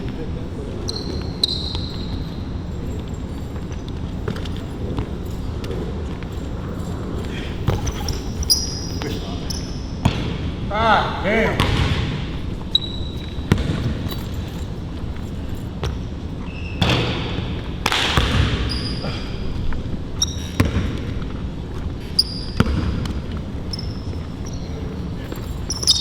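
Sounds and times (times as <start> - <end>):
sneaker squeaks on the floor: 0.0 - 10.3, 11.6 - 19.4, 20.1 - 21.4, 22.0 - 26.0
basketball bouncing on a court: 0.8 - 6.3, 7.6 - 10.6, 11.5 - 19.3, 20.2 - 24.7.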